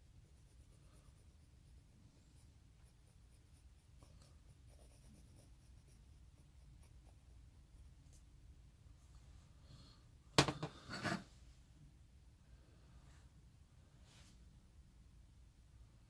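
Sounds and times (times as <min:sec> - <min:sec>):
low room hum: 0:00.0 - 0:16.0
light scratching: 0:10.8 - 0:11.3.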